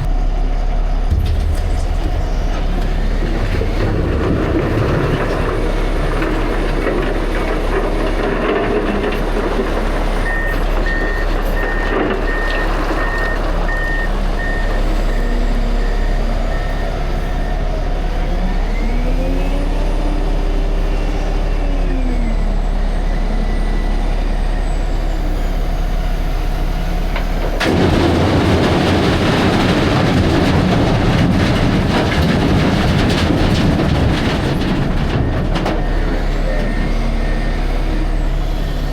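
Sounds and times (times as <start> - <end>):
truck engine running: 0.0 - 38.9
loud rushing noise: 1.0 - 6.2.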